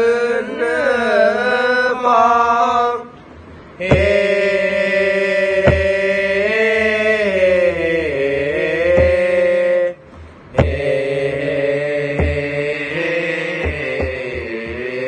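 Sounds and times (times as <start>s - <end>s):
voices chanting held notes: 0.0s - 15.0s
sharp knocks marking time: 3.8s - 4.5s, 5.5s - 6.1s, 8.8s - 9.6s, 10.2s - 15.0s.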